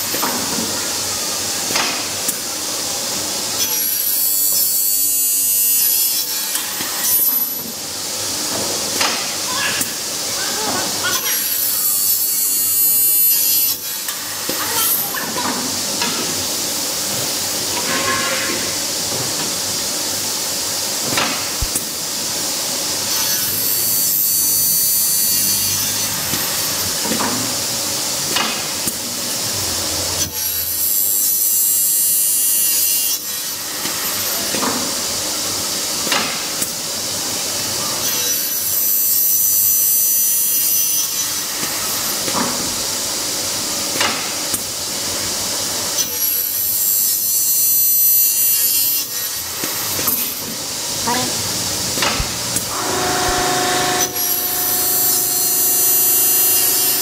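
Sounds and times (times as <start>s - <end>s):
saw shrieking through aluminium: 23.2s - 27.0s, 52.7s - 57.0s.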